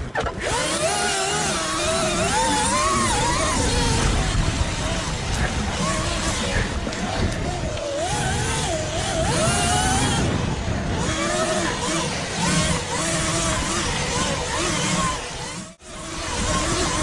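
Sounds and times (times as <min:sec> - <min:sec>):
electric motor whine: 0:00.0 - 0:17.0.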